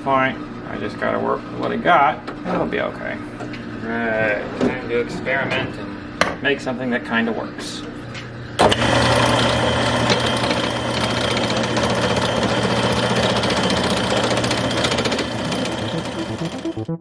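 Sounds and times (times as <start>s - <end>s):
lathe motor hum: 8.7s - 16.2s.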